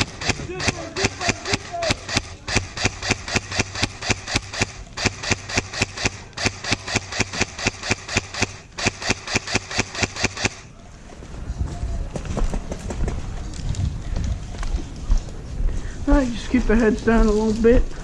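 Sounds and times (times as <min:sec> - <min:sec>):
airsoft gun firing rapidly: 0:00.0 - 0:10.7.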